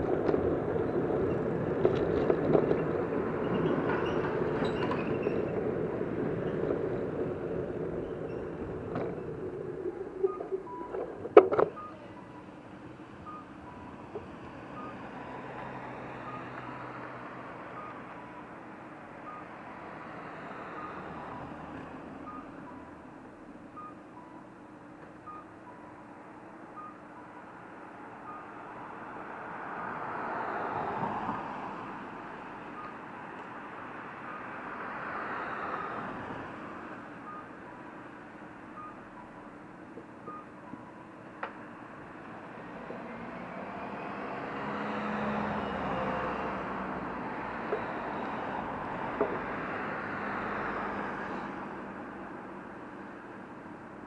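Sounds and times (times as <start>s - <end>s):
street traffic: 0.0s - 54.0s
vehicles passing: 0.0s - 54.0s
faint electronic beep: 11.7s - 12.5s.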